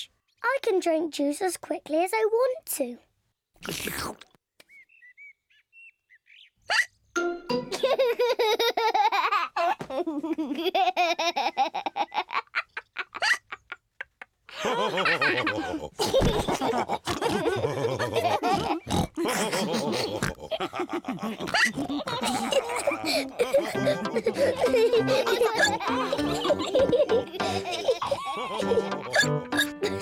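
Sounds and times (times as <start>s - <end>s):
cartoon characters laughing: 7.6s - 30.0s.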